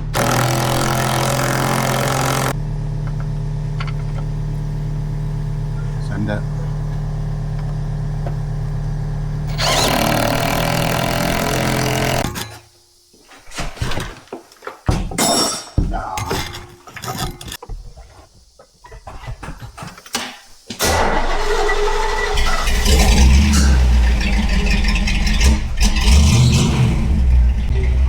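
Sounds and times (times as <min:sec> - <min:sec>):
engine running under throttle: 0:21.1 - 0:28.0.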